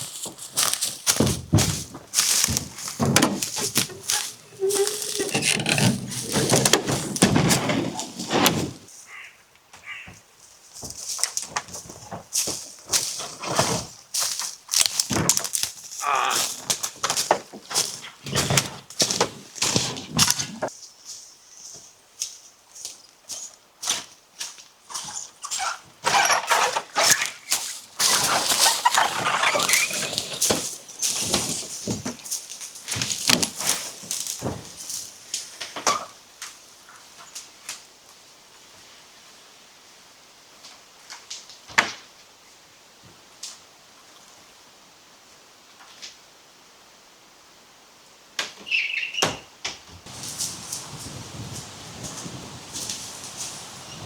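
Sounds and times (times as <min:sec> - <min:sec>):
rustling and crunching knocks: 0:00.0 - 0:08.9, 0:10.8 - 0:20.7, 0:27.6 - 0:36.0, 0:50.1 - 0:54.0
short bird calls: 0:09.1 - 0:10.2.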